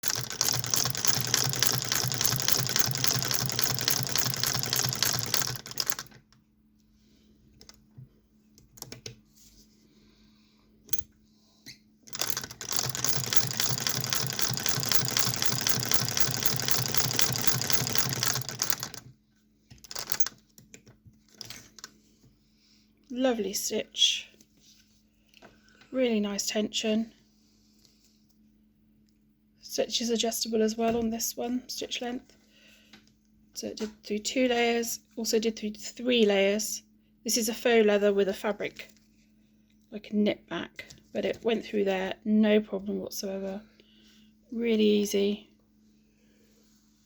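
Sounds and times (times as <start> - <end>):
sewing machine clattering: 0.0 - 6.2, 12.1 - 19.1, 19.8 - 20.4.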